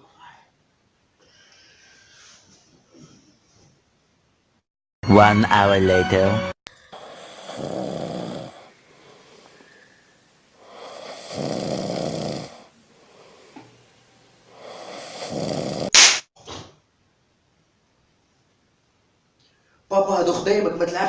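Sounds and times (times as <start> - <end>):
person snoring loudly: 6.9 - 8.7, 10.6 - 12.7, 14.5 - 15.9
sharp hiss-like burst: 15.9 - 16.3.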